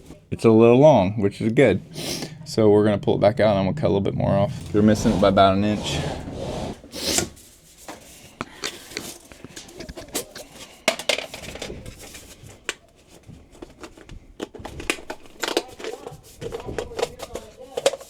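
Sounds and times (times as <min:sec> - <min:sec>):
metal scrapes: 0:01.3 - 0:07.3.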